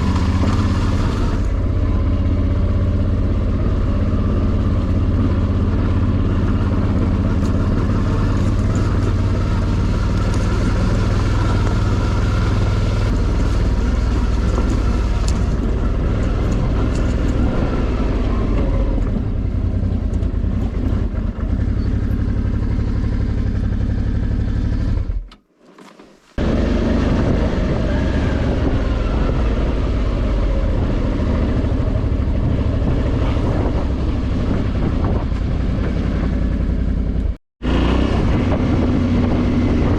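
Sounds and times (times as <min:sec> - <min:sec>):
motorcycle engine running: 0:00.0 - 0:25.3, 0:26.4 - 0:39.9.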